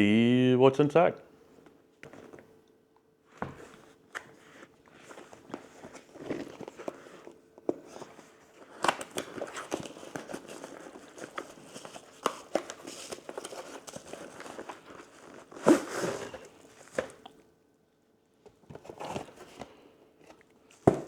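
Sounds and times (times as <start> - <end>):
cardboard packaging rustling: 3.6 - 17.3, 18.7 - 21.0.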